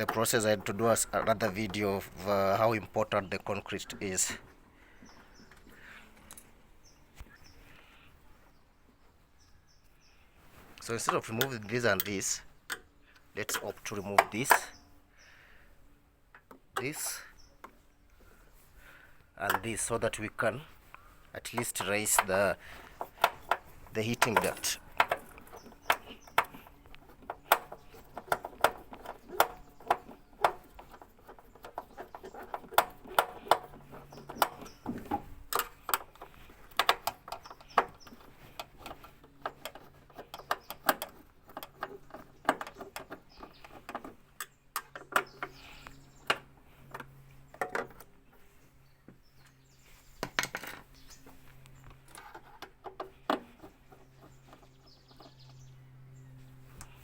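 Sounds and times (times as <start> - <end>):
metal tools clicking and clinking: 21.4 - 45.6.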